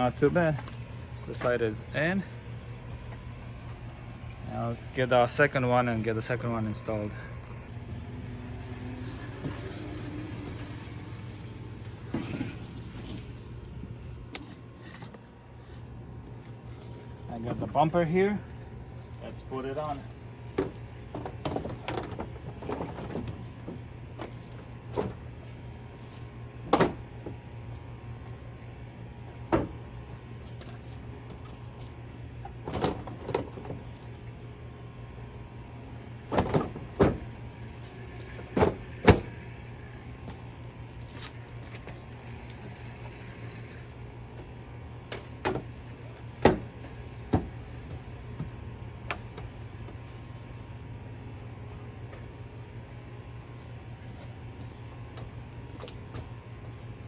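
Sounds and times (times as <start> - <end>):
steady low hum: 0.0 - 57.0
knocks and clunks of parts: 19.8 - 27.4, 29.3 - 34.2, 36.1 - 39.6, 44.4 - 50.1.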